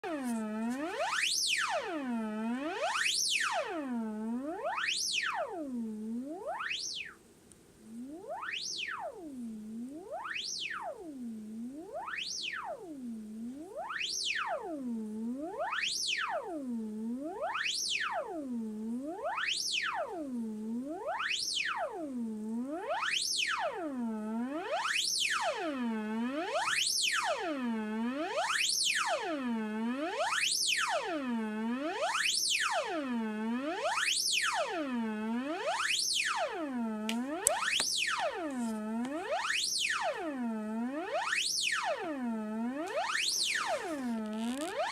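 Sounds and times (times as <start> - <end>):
electronic tone sweeping through amp: 42.7 - 44.9.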